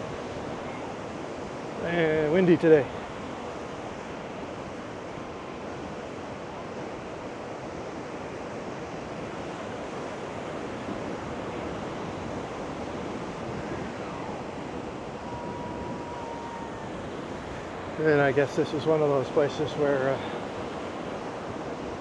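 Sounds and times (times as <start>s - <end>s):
ocean surf washing on beach: 0.0s - 22.0s
wind buffeting microphone: 8.7s - 18.5s.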